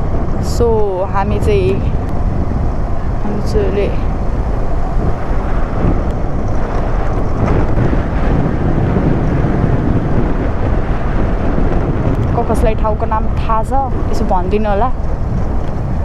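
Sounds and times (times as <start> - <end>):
motorcycle engine: 0.0 - 12.4
road noise: 0.0 - 16.0
wind rushing over microphone: 0.0 - 16.0.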